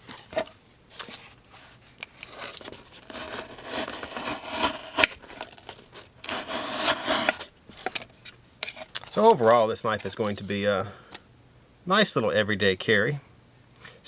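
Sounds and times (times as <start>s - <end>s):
knife blade cutting material: 2.3s - 7.5s.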